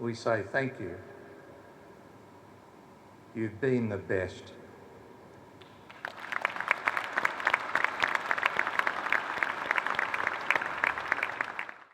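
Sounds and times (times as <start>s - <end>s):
audience applause: 5.9s - 11.9s.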